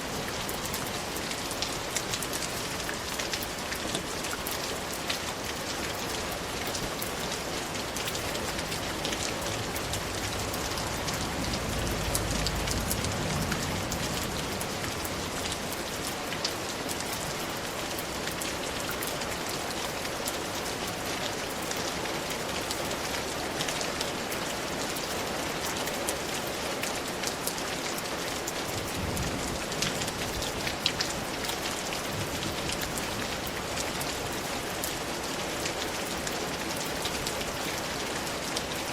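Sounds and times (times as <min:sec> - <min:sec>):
steady rainfall: 0:00.0 - 0:38.9
low rumble: 0:08.8 - 0:15.6.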